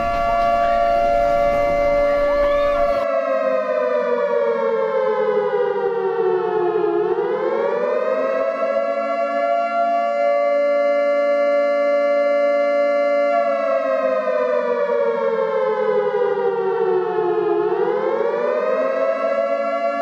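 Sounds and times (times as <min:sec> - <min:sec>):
two-tone warning siren: 0:00.0 - 0:20.0.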